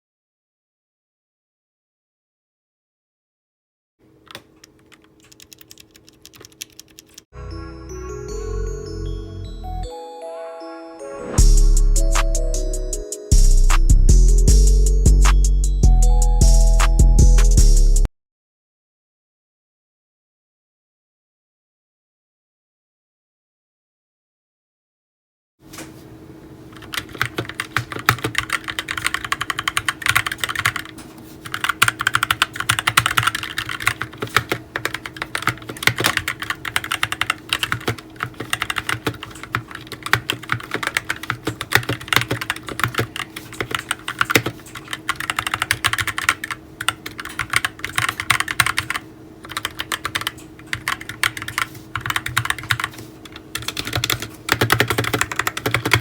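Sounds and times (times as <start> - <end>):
keyboard typing clacks: 4.3 - 7.3, 26.7 - 56.0.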